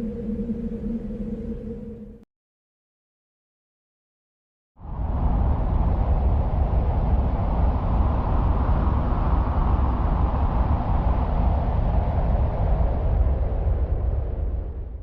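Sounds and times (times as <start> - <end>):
dense rush of deep noise: 0.0 - 2.2.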